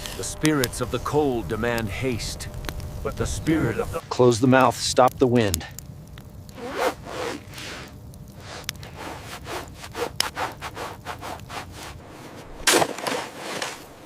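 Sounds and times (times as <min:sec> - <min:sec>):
rubbing and scraping strokes: 0:06.6 - 0:14.0.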